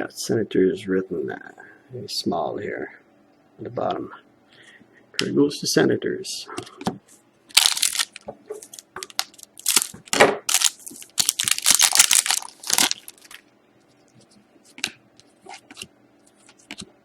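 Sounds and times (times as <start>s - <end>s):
wrapper crinkling: 7.5s - 13.5s.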